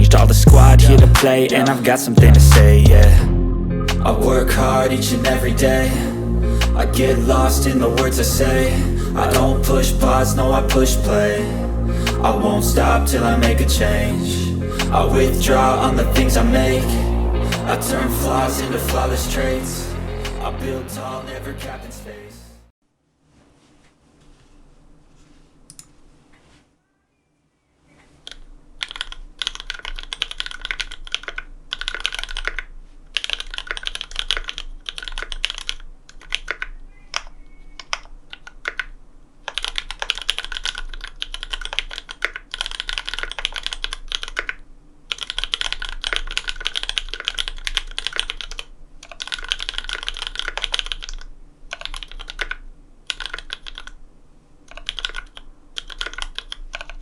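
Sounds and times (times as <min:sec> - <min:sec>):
mechanical keyboard typing: 0:28.2 - 0:54.0, 0:54.7 - 0:57.0.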